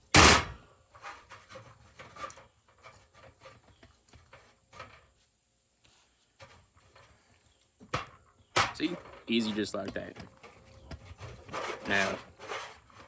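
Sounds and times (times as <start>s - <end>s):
stove burner rubbing and clicking: 8.6s - 13.0s.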